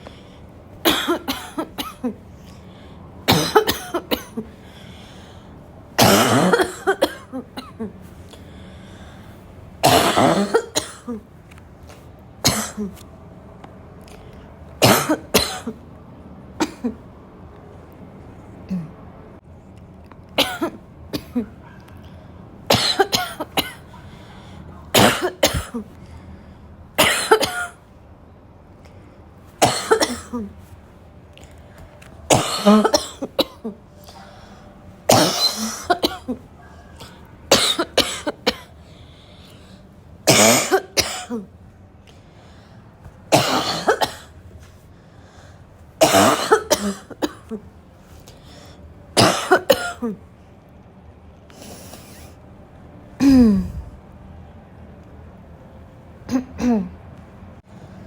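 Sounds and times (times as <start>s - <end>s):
person barking cough: 0.8s - 2.2s, 3.3s - 4.5s, 6.0s - 7.9s, 9.8s - 11.2s, 22.7s - 23.9s, 24.9s - 25.9s, 27.0s - 27.8s, 29.6s - 30.5s, 32.3s - 33.8s, 35.1s - 36.4s, 37.5s - 38.7s, 40.3s - 41.4s, 43.3s - 44.3s, 46.0s - 47.6s, 49.2s - 50.2s, 53.2s - 53.9s.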